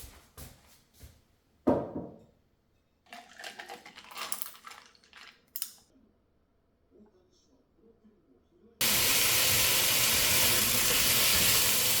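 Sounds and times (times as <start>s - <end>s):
solid knock: 1.7s - 2.3s
objects clattering and clinking: 3.1s - 5.8s.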